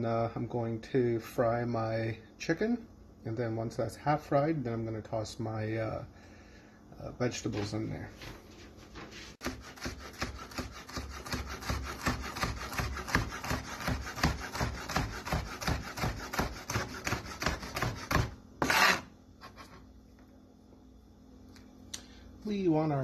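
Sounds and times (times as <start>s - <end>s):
knife scraping cutting board: 9.0s - 19.9s
knife slicing vegetables: 9.4s - 19.8s.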